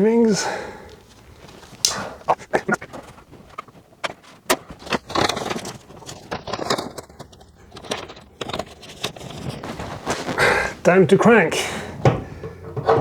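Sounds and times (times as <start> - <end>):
handling rustles: 0.7 - 11.1.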